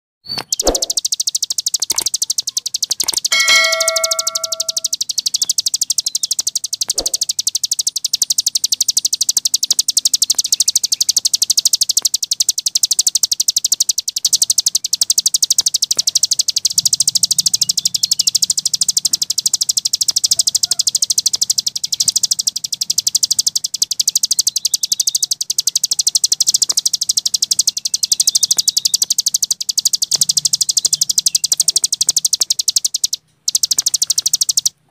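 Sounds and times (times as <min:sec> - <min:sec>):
steady whistled tone: 0:00.3 - 0:34.7
bird song fast high chatter: 0:00.4 - 0:34.9.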